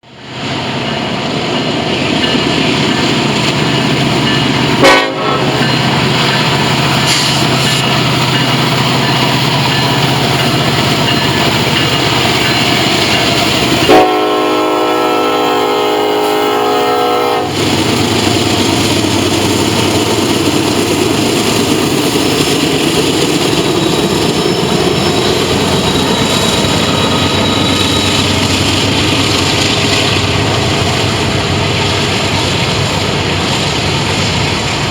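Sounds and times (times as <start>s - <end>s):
train wheels rumbling on rail: 0.0s - 34.9s
train horn: 4.8s - 5.6s, 13.8s - 17.6s.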